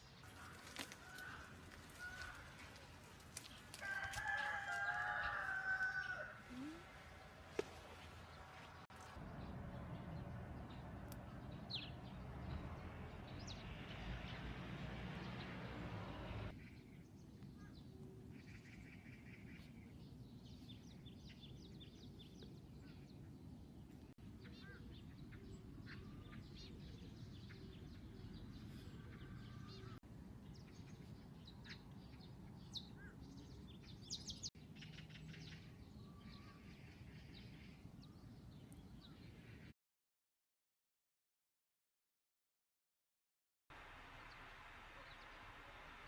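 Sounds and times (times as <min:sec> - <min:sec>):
birds chirping and trilling: 0:16.5 - 0:39.7.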